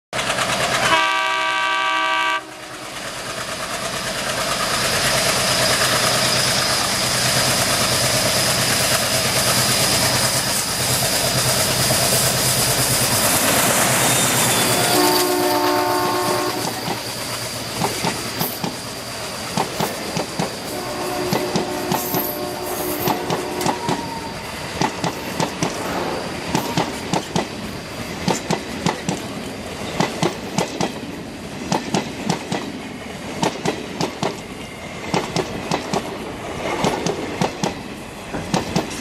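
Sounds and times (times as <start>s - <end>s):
train rumbling past: 0.2s - 39.0s
train horn blast: 0.8s - 2.9s, 14.4s - 16.9s, 20.7s - 24.3s
wheels clacking over rail joints: 2.9s - 39.0s.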